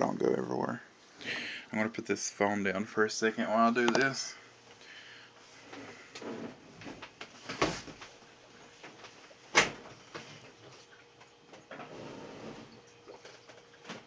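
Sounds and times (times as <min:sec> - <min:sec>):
washing machine knocking and scraping: 0:11.6 - 0:14.0.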